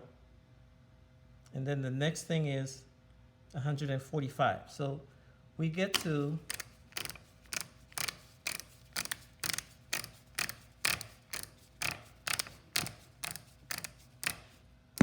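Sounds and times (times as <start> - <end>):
torque wrench ratcheting clicks: 6.0 - 14.6.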